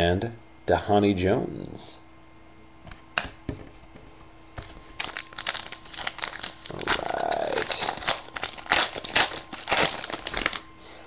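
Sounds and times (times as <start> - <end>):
foil wrapper tearing and crinkling: 4.6 - 10.6.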